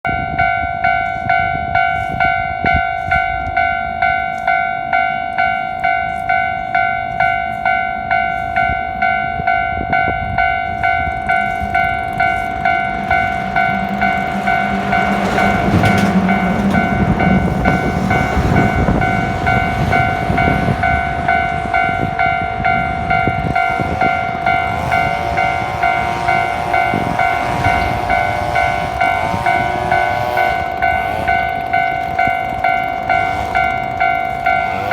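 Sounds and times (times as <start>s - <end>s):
level crossing bell ringing: 0.1s - 34.9s
rising whine: 0.1s - 34.9s
truck rumbling past: 10.4s - 34.9s.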